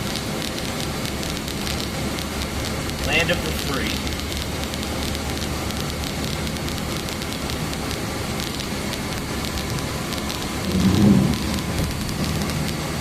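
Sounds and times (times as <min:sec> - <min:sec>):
rain on a car: 0:00.0 - 0:13.0
raindrop ticks: 0:00.0 - 0:13.0
road noise: 0:00.0 - 0:13.0.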